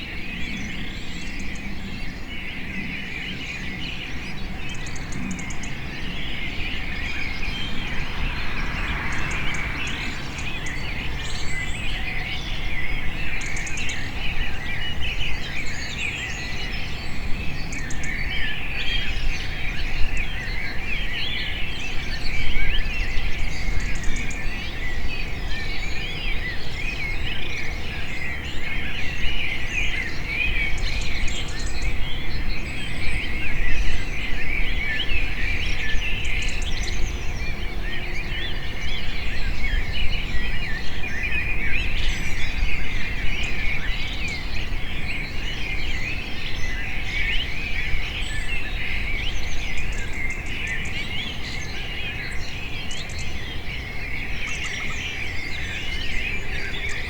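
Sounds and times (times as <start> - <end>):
small birds chirping: 0.0 - 57.0
low background rumble: 6.1 - 12.7.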